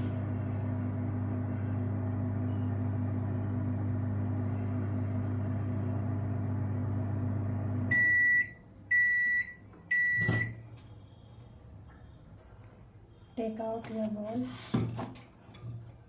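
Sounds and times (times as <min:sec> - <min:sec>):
microwave oven humming: 0:00.0 - 0:10.6
microwave beeps: 0:07.9 - 0:10.6.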